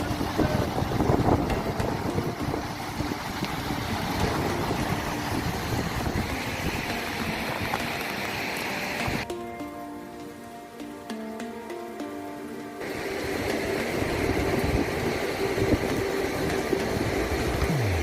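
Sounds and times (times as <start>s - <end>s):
wind buffeting the microphone: 0.0s - 8.3s, 12.8s - 18.0s.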